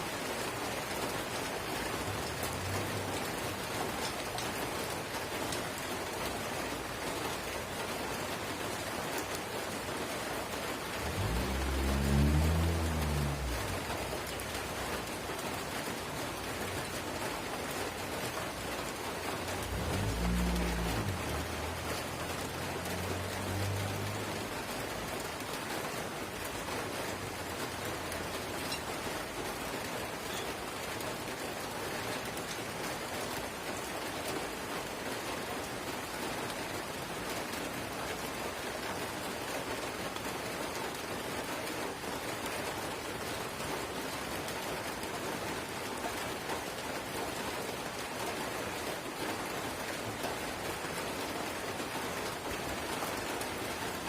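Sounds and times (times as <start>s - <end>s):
light rain hissing: 0.0s - 54.0s
low rumble: 11.0s - 14.8s.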